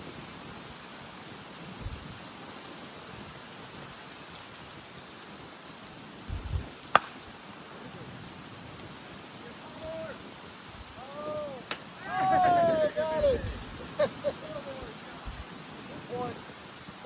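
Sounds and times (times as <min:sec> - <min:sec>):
wind noise on microphone: 0:00.0 - 0:17.0
bat hitting ball: 0:06.9 - 0:07.2.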